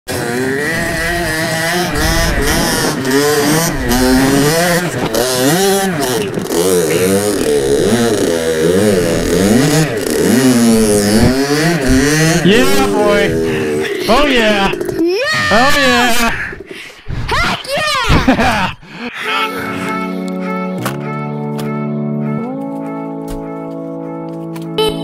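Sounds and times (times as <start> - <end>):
dirt bike engine revving: 0.1 - 16.8.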